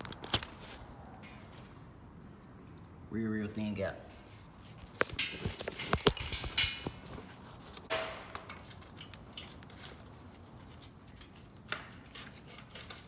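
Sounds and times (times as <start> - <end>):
sharp clicks and knocks: 4.9 - 8.7.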